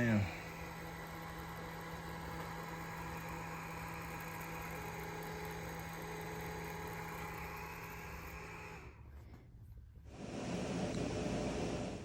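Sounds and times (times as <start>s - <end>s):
laser engraver humming: 0.0s - 9.0s.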